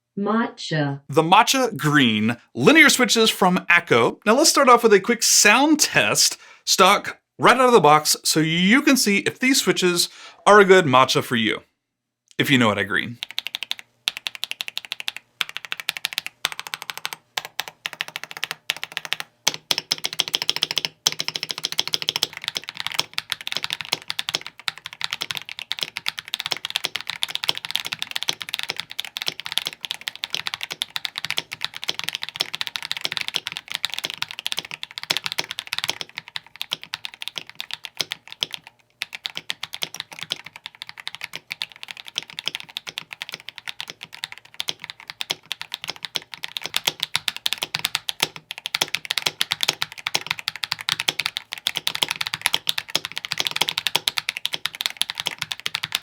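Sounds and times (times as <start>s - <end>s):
mechanical keyboard typing: 13.2s - 56.0s.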